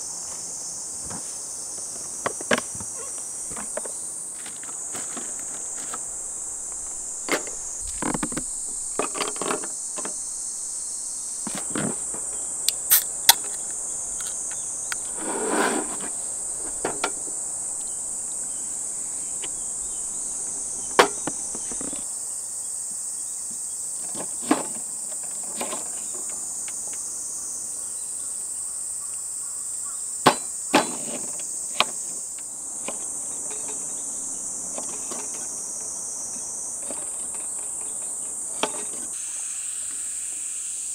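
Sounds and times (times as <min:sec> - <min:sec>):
insects droning: 0:00.0 - 0:40.9
sharp knocks and clicks: 0:20.9 - 0:22.0.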